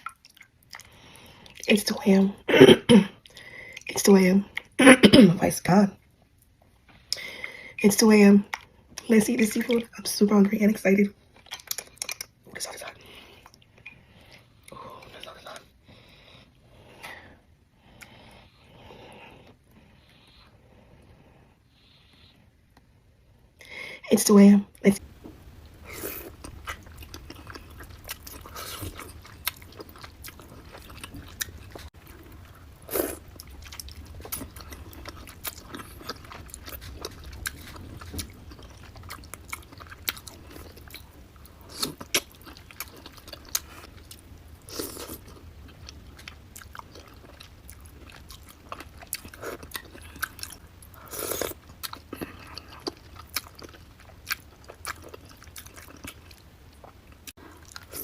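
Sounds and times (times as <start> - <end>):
person chewing and lip smacking: 0.0 - 1.8, 11.4 - 15.8, 26.0 - 58.0.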